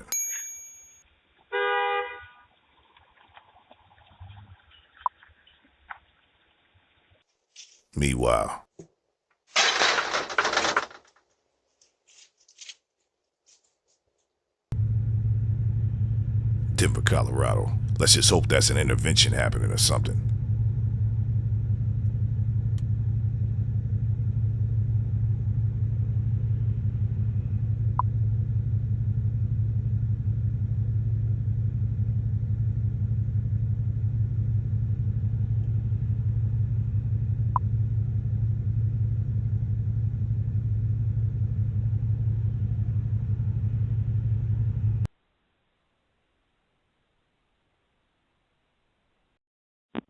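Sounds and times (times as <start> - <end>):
vehicle engine idling: 14.7 - 45.1.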